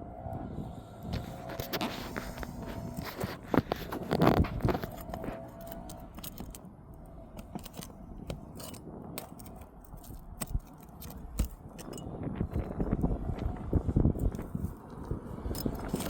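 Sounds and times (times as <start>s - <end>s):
scraping on roof shingles: 1.4s - 6.7s
small tool clicks: 4.8s - 6.6s, 7.4s - 12.7s.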